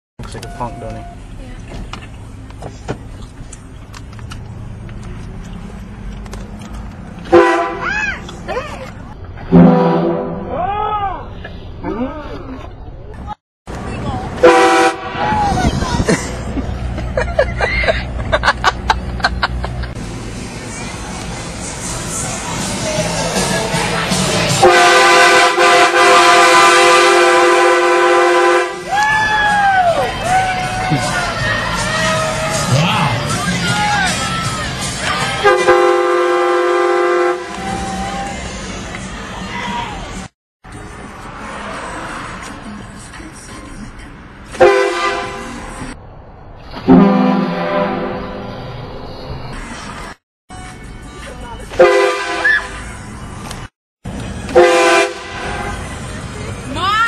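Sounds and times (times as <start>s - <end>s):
vehicle driving noise: 0.2s - 57.0s
train horn blast: 7.3s - 7.8s, 9.5s - 10.5s, 14.4s - 15.3s, 24.5s - 28.9s, 35.4s - 37.8s, 44.6s - 45.5s, 46.9s - 48.5s, 51.8s - 52.8s, 54.5s - 55.8s.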